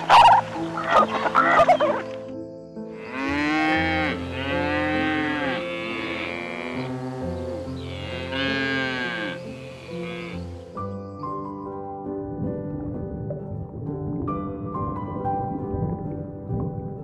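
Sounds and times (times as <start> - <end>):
cow mooing: 3.0 - 10.4.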